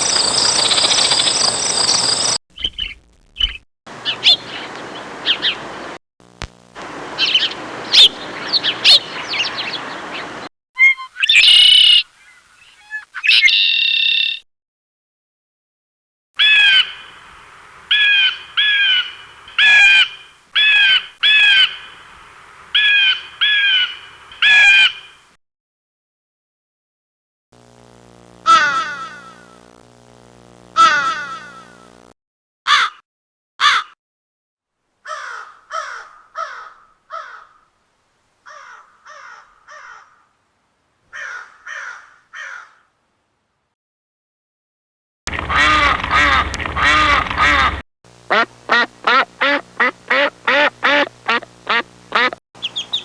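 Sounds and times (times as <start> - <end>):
blue jay calling: 0.0 - 5.6, 7.2 - 9.9, 10.8 - 14.4, 16.4 - 17.0, 17.9 - 21.8, 35.0 - 37.6, 38.5 - 40.2, 41.1 - 42.9, 48.3 - 53.0
crow cawing: 28.5 - 29.6, 30.8 - 31.8, 32.7 - 33.0, 33.6 - 34.0, 35.0 - 37.7, 38.5 - 40.3, 41.1 - 43.0, 45.5 - 47.8.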